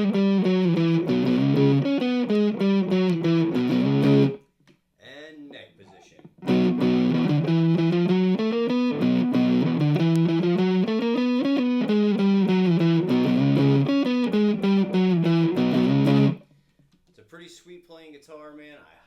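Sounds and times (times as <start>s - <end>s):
distorted electric guitar riff: 0.0s - 4.4s, 6.4s - 16.4s.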